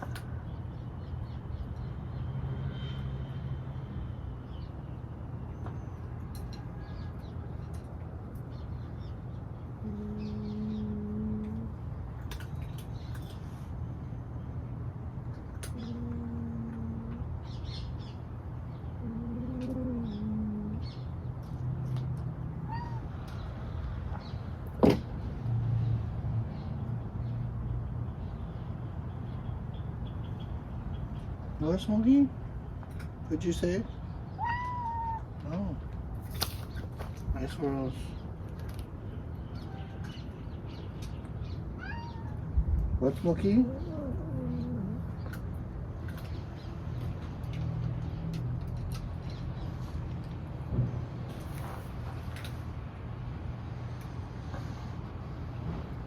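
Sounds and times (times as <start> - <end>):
cat meowing: 22.6 - 23.2, 34.4 - 35.4, 41.8 - 42.6.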